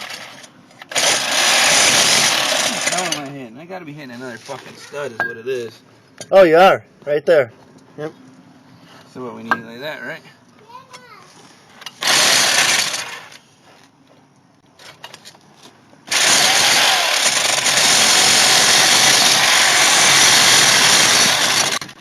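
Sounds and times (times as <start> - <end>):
reciprocating saw cutting metal: 0.0 - 3.2, 11.9 - 13.3, 16.1 - 22.0.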